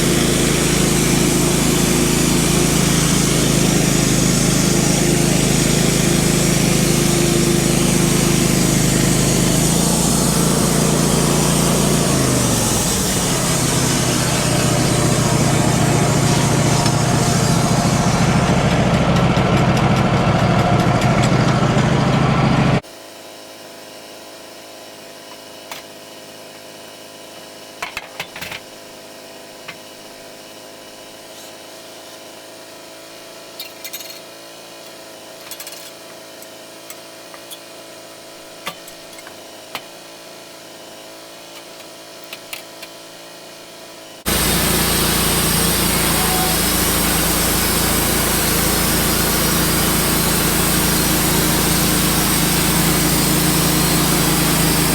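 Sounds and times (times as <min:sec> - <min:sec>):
sawmill saw running: 0:00.0 - 0:22.8, 0:43.5 - 0:54.9.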